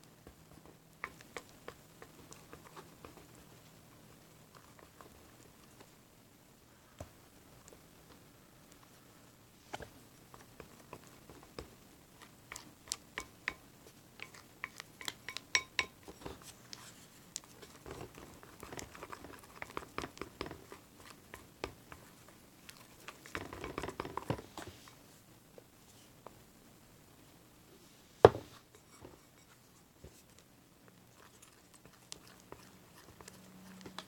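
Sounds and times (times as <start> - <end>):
stick tapping container: 14.2 - 16.0.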